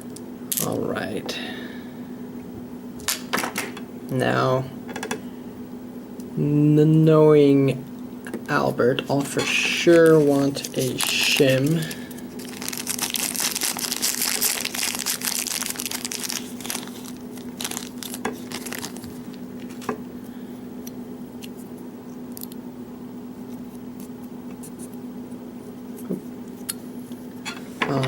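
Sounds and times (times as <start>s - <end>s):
low steady hum: 0.0s - 28.0s
packaging crinkling: 9.9s - 20.0s.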